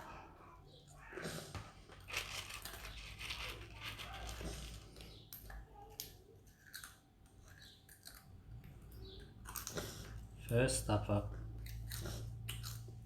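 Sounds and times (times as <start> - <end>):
plastic packet crinkling: 2.0 - 5.1.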